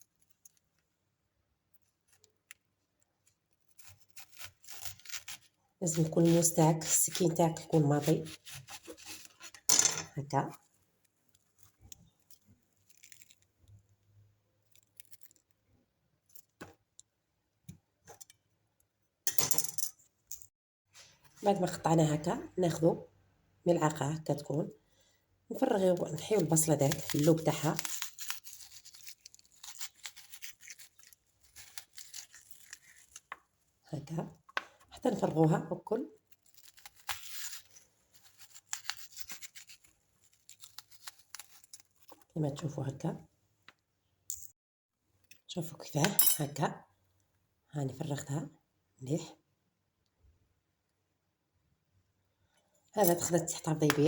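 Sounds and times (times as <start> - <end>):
spoon scraping onion: 3.6 - 10.3, 26.0 - 33.4, 36.3 - 42.2
onion flesh clicking: 11.7 - 13.8, 26.0 - 33.5, 36.2 - 42.2.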